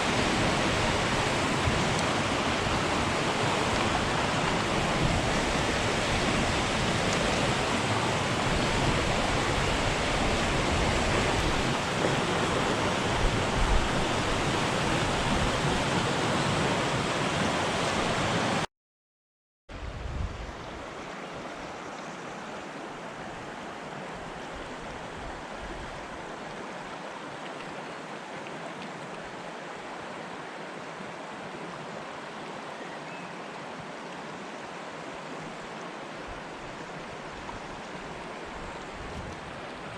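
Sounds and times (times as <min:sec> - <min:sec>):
river water rushing: 0:00.0 - 0:18.7, 0:19.9 - 0:39.9.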